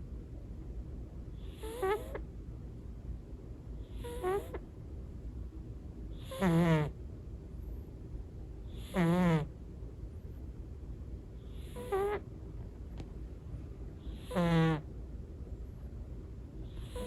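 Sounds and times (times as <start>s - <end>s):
cat snoring: 1.4s - 2.2s, 3.9s - 4.6s, 6.2s - 7.0s, 8.7s - 9.5s, 11.5s - 12.2s, 14.0s - 14.9s, 16.7s - 17.0s.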